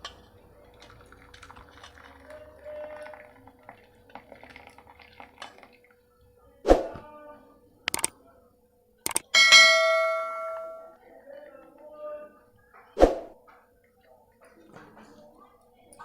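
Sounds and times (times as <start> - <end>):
liquid pouring and dripping: 0.0 - 6.0.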